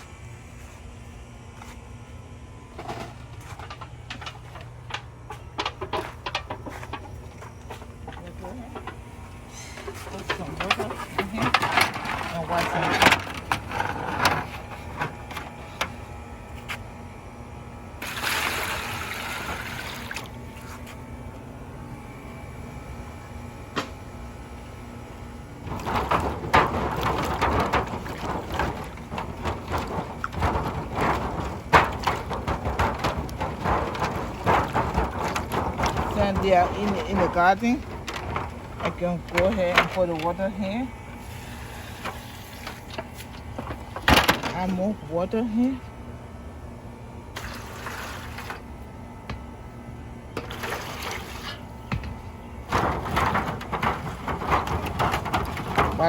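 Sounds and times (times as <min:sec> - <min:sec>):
steady low hum: 0:00.0 - 0:56.0
potatoes splashing and scrubbed in water: 0:50.4 - 0:51.6.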